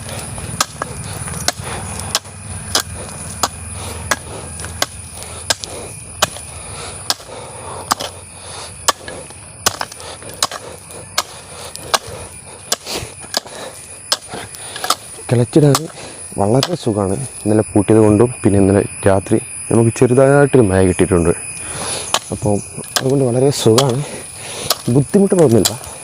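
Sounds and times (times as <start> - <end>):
hoe chopping into soil: 0.0 - 8.2, 8.8 - 16.0, 21.8 - 25.9.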